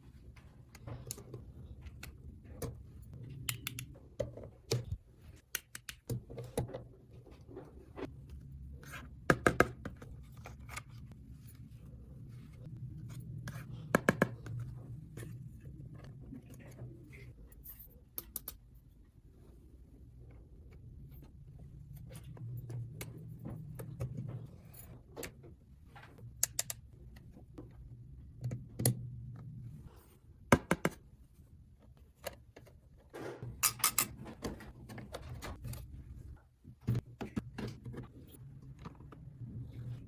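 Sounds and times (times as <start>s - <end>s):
low steady hum: 6.6s - 30.5s.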